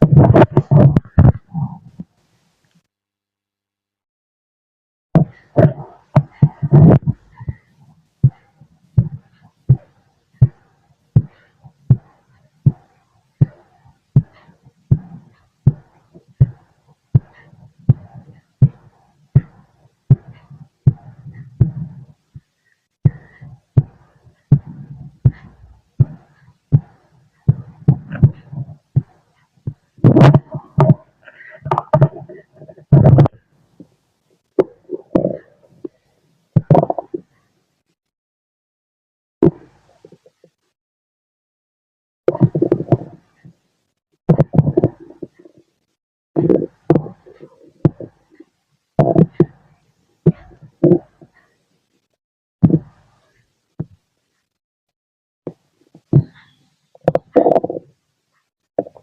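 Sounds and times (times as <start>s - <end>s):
heartbeat through stethoscope: 0.0s - 2.1s, 5.2s - 33.4s, 34.6s - 35.4s, 36.6s - 37.2s, 39.4s - 40.3s, 42.3s - 43.2s, 44.3s - 45.6s, 46.4s - 48.2s, 49.0s - 49.6s, 50.2s - 51.4s, 52.6s - 53.0s, 55.5s - 56.4s, 57.0s - 57.8s.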